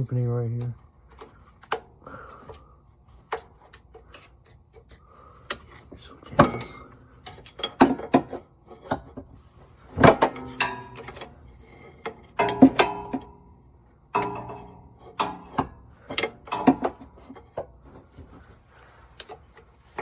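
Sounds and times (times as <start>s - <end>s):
metal tools clinking and scraping: 5.6s - 20.0s
sharp metallic clanks: 9.9s - 18.2s.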